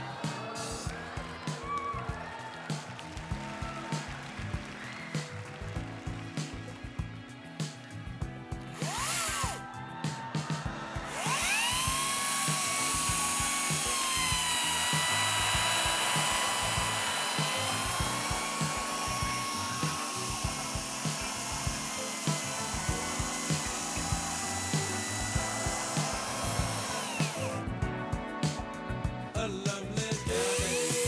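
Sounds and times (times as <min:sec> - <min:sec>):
background music with a beat: 0:00.0 - 0:31.0
power tool motor whining: 0:08.8 - 0:09.6, 0:11.0 - 0:27.7, 0:30.3 - 0:31.0.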